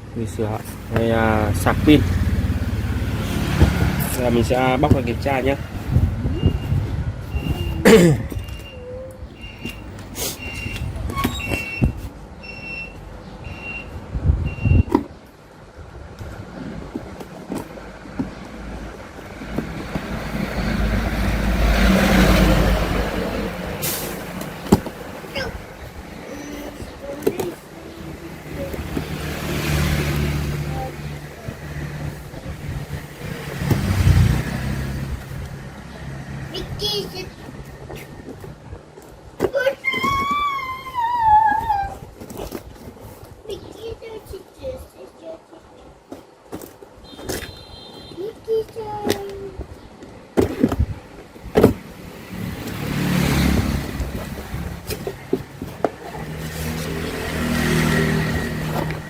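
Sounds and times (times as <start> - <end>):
vehicle engine hum: 0.3 - 11.2, 49.6 - 59.0
passing motor vehicle engine: 0.8 - 7.8, 17.8 - 26.4, 27.9 - 37.9, 51.9 - 59.0.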